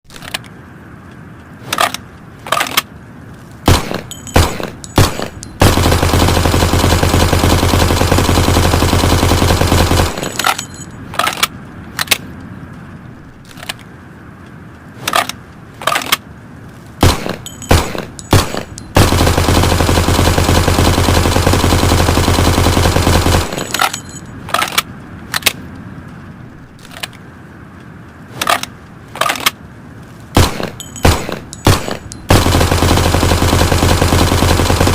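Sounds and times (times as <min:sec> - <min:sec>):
submachine gun firing: 0:03.7 - 0:10.7, 0:17.0 - 0:24.0, 0:30.4 - 0:34.9.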